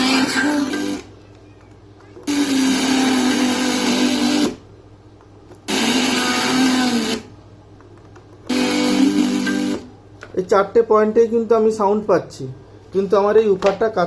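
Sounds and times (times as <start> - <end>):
radio playing through small speaker: 0.0 - 4.4.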